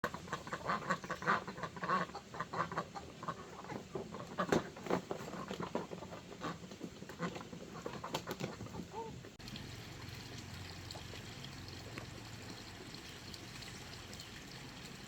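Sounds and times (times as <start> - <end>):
chickens and ducks clucking: 0.0 - 9.2
pecking and scratching: 2.6 - 9.1.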